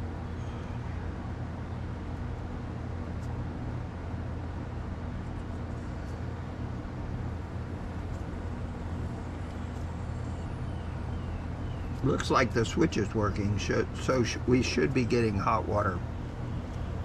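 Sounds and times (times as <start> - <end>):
low mechanical hum: 0.0 - 17.0
outdoor background noise: 0.0 - 17.0.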